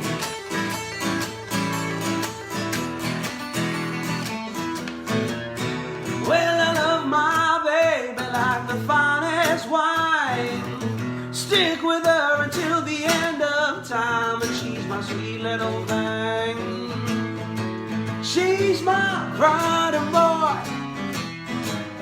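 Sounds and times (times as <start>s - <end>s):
blues guitar playing: 0.0s - 22.0s.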